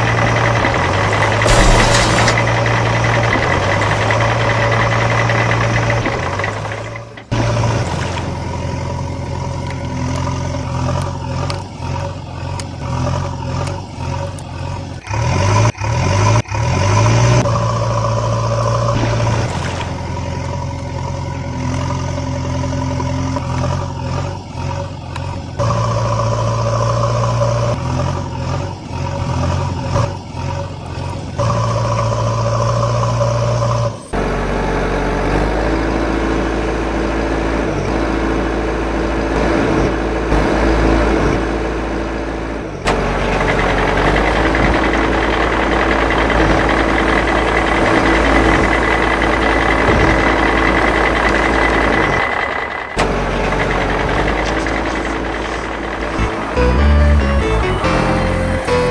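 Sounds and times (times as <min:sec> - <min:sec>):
truck engine idling and revving: 0:00.0 - 0:58.9.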